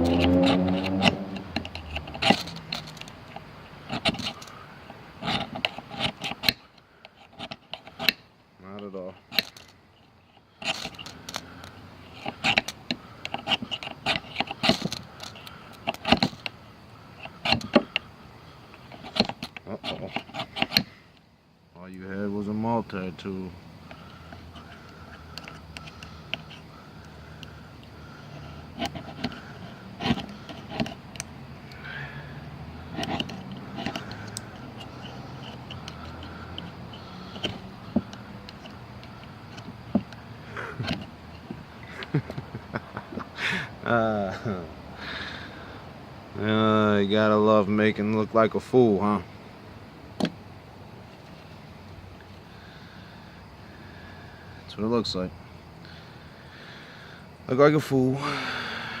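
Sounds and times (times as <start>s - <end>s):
metal scraping ferrocerium rod: 0.0s - 8.2s, 8.8s - 18.0s, 18.7s - 20.9s, 28.3s - 31.9s, 32.8s - 41.5s
steady low hum: 0.0s - 59.0s.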